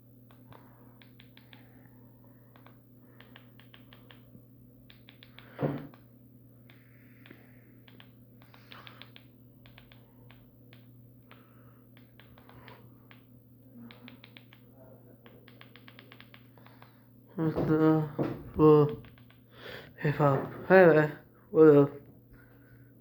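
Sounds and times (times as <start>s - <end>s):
low electrical hum: 0.0s - 23.0s
faint keypad clicks: 1.0s - 1.6s, 6.7s - 11.4s, 13.9s - 14.6s, 15.2s - 16.9s.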